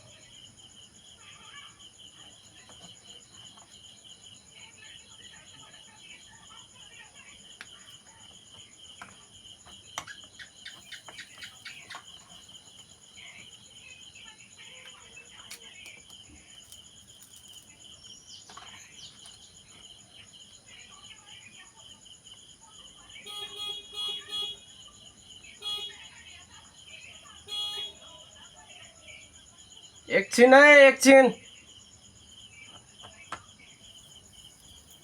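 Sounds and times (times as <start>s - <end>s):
crickets trilling: 0.0s - 35.0s
vehicle horn beeping: 23.3s - 24.6s, 25.6s - 26.0s, 27.4s - 28.0s.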